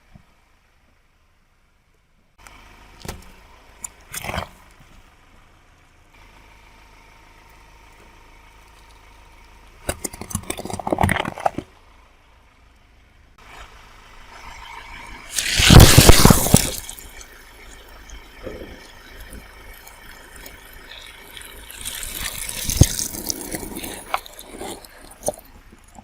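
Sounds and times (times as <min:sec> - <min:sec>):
faint engine hum: 0:00.0 - 0:26.0
brittle object crackling under tyre: 0:09.8 - 0:11.8, 0:15.3 - 0:26.0.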